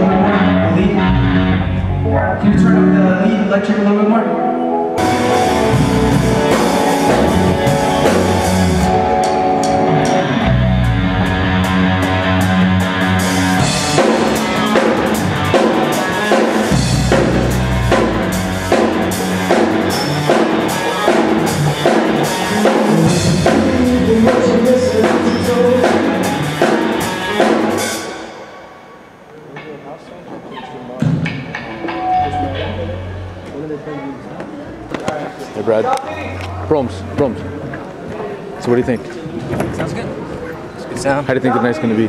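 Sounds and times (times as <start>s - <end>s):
bass line: 0.0s - 3.9s, 5.0s - 27.8s, 32.0s - 34.0s
held chords: 0.0s - 29.6s, 31.3s - 34.9s
drum kit beat: 5.0s - 28.3s.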